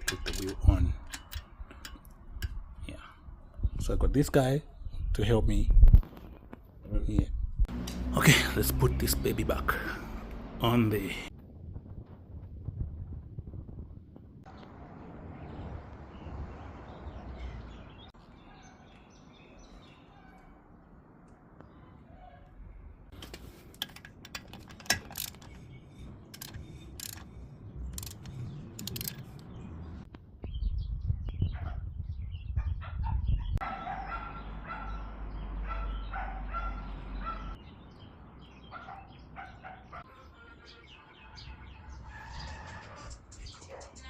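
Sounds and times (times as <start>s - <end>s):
wheel and bolts clicking and knocking: 0.0s - 2.7s, 23.1s - 30.0s
low rumble: 11.3s - 16.9s.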